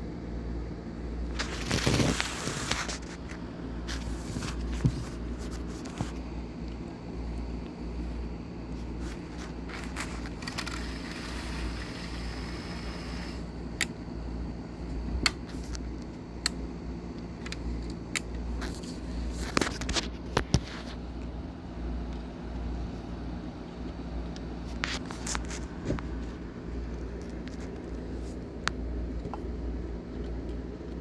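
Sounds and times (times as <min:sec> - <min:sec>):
model train motor humming: 0:09.6 - 0:13.5.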